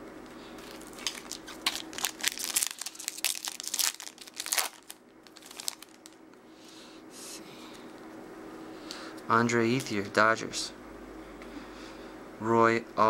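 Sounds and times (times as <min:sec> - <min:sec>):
trading cards rustling: 0:00.6 - 0:06.2.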